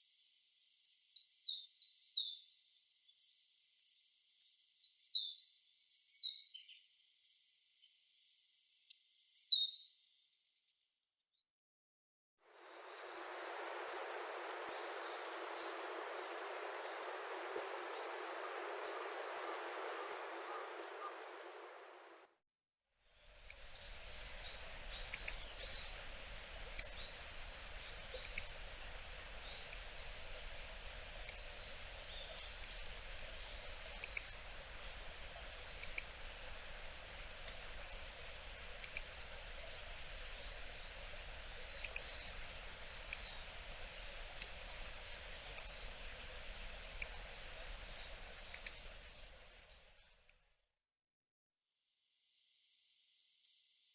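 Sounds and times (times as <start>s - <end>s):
bird sharp high calls: 12.6s - 22.2s, 23.5s - 49.4s.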